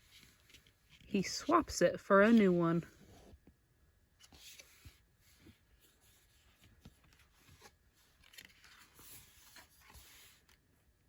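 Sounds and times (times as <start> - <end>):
paper rustling: 4.2 - 10.7.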